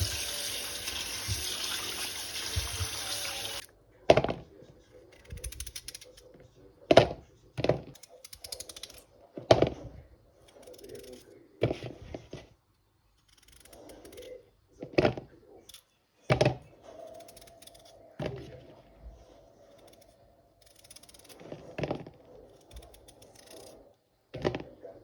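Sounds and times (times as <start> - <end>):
kitchen knocks and clatters: 0.0 - 4.5
rustling and scraping: 11.6 - 12.6.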